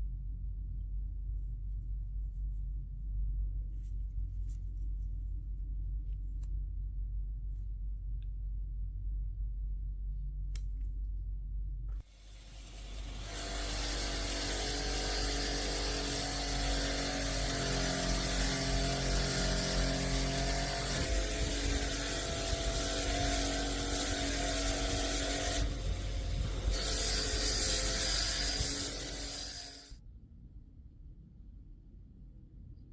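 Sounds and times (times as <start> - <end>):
power tool motor whine: 12.2 - 30.0
abrasive hiss on steel: 20.7 - 30.0.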